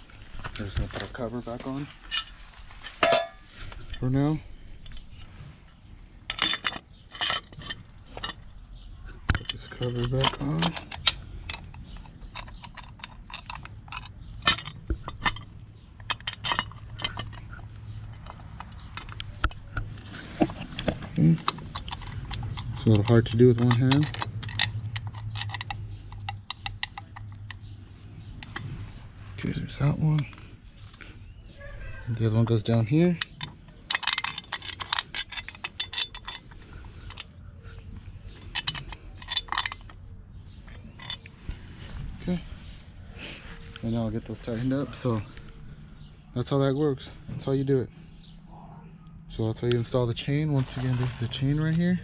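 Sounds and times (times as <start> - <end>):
light metallic clinks and knocks: 0.4 - 4.2, 6.3 - 29.0, 29.7 - 42.8.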